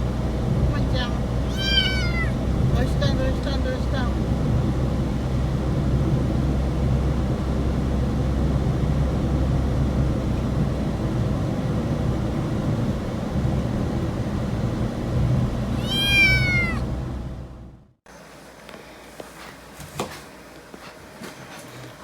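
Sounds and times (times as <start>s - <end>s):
moving vehicle rumble: 0.0s - 18.0s
kitten meowing: 1.4s - 2.4s, 15.7s - 16.9s.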